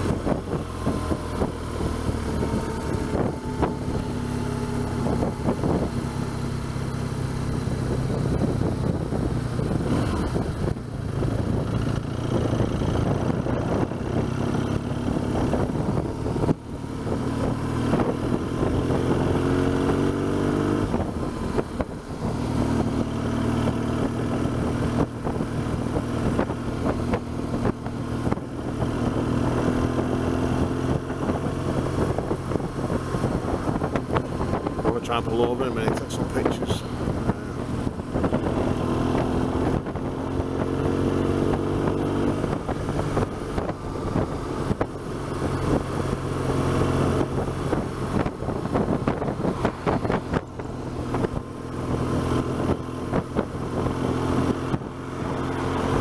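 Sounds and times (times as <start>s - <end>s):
motorcycle engine accelerating: 0.0s - 56.0s
wind rush on microphone: 0.0s - 56.0s.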